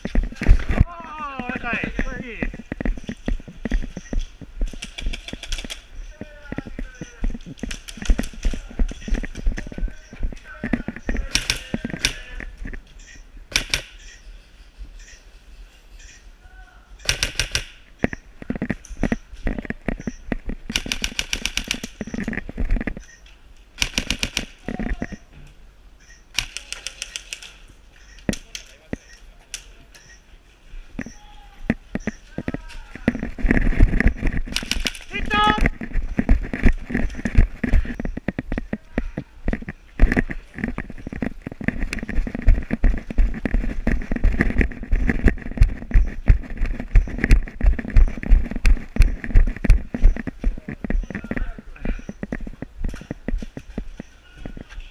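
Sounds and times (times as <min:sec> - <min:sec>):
running footsteps: 0:00.0 - 0:13.9, 0:30.4 - 0:54.9
sharp clicks: 0:00.0 - 0:14.2, 0:17.0 - 0:25.3, 0:26.0 - 0:30.2, 0:31.0 - 0:54.1
airsoft rifle full-auto bursts: 0:17.0 - 0:17.8, 0:20.7 - 0:22.0, 0:23.8 - 0:24.6
dull thuds of movement: 0:31.7 - 0:54.7.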